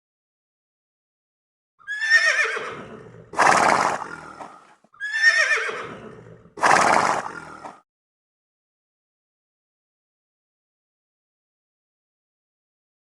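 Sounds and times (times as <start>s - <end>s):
animal quavering cry: 1.8s - 7.8s.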